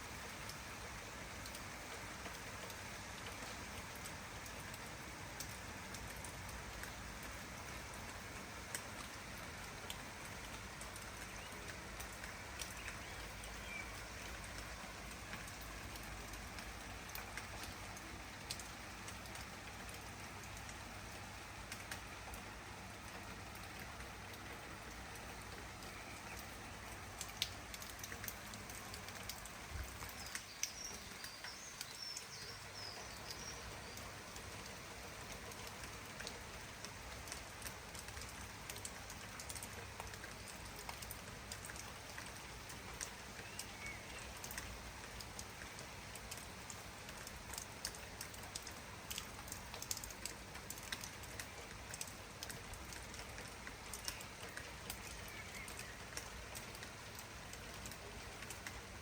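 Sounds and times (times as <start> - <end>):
steady rain falling: 0.0 - 59.0
bird chirping: 30.1 - 34.0.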